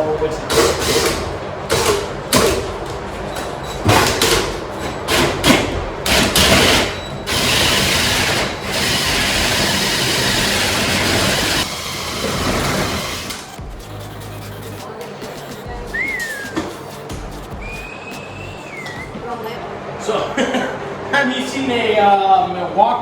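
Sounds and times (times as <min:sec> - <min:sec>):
power tool running: 0:00.2 - 0:14.9.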